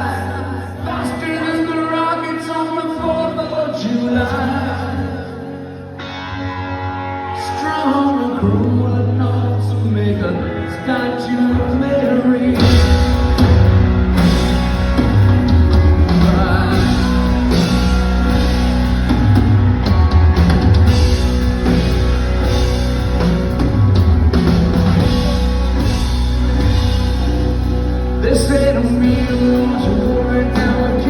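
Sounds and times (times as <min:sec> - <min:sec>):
person singing: 0:00.0 - 0:06.1, 0:15.0 - 0:18.6, 0:26.6 - 0:31.0
rock band playing live: 0:00.0 - 0:31.0
drums and bass: 0:07.4 - 0:31.0.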